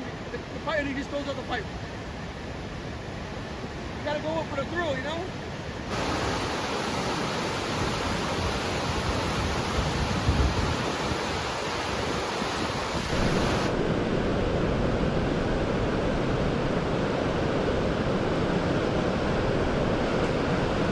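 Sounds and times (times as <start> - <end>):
breaking waves roaring: 0.0 - 20.9
wind noise on microphone: 5.9 - 20.9.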